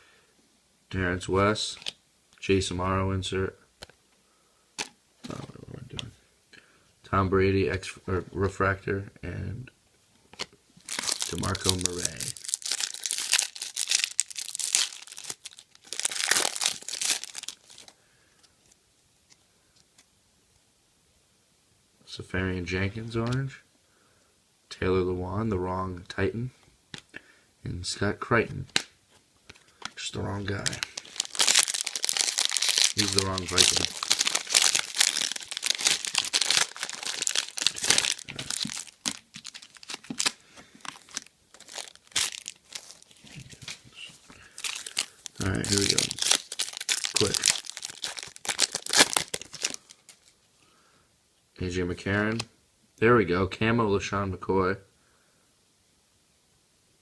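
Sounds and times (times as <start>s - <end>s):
cards being handled: 10.3s - 20.1s, 28.6s - 50.4s
wrapper crackling and tearing: 10.8s - 18.0s, 30.4s - 43.8s, 44.4s - 50.4s.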